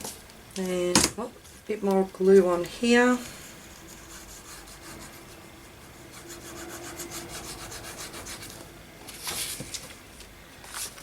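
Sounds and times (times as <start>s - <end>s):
paper rustling: 9.1s - 11.0s.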